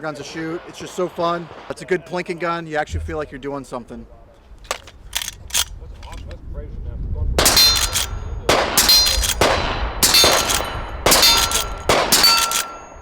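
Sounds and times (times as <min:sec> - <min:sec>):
suppressed rifle shots: 0:07.4 - 0:12.9
steel target clanging: 0:08.8 - 0:09.4, 0:10.0 - 0:13.0.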